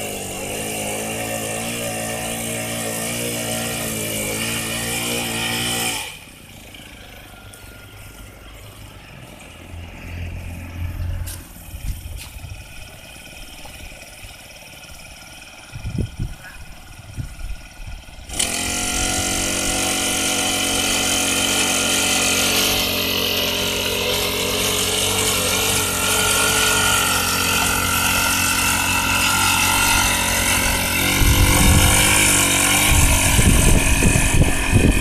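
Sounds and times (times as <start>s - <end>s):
small engine starting and running: 0.0s - 35.0s.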